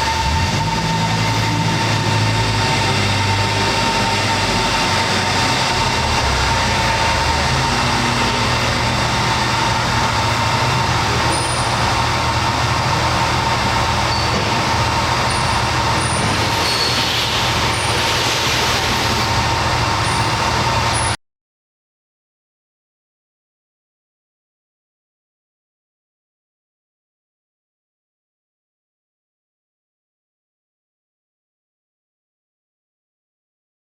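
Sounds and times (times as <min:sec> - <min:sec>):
machine whining: 0:00.0 - 0:21.2.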